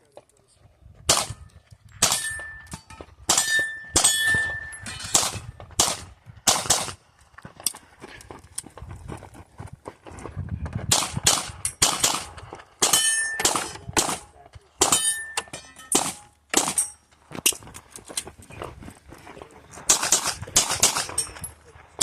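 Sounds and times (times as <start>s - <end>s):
pistol shots: 1.1s - 1.4s, 2.0s - 2.4s, 3.3s - 7.0s, 10.9s - 15.3s, 15.9s - 16.9s, 19.9s - 21.2s
steel targets ringing: 2.0s - 5.2s, 12.8s - 13.8s, 14.8s - 17.0s.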